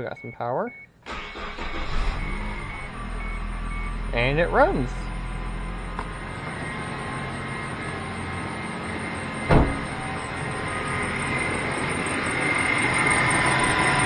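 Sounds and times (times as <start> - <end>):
car engine idling: 1.0 - 14.0
sharp thump: 9.5 - 10.0.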